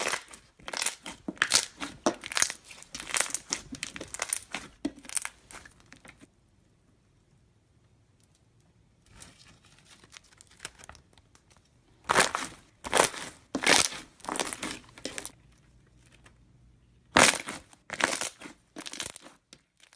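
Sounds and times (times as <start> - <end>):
slime crinkling and crunching: 0.0 - 6.3, 9.9 - 16.4, 17.1 - 19.9.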